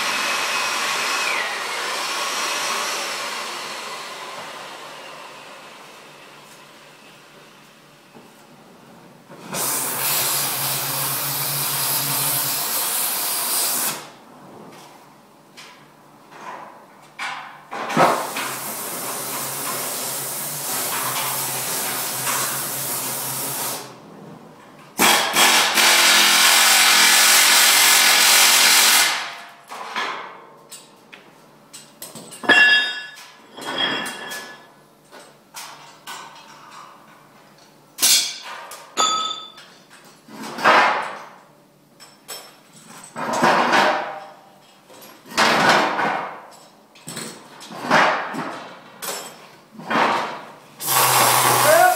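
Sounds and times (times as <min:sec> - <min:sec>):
power tool running: 0:00.0 - 0:06.3, 0:25.0 - 0:29.4, 0:50.8 - 0:51.9
metal clanking and ringing: 0:32.3 - 0:34.8, 0:38.1 - 0:39.8.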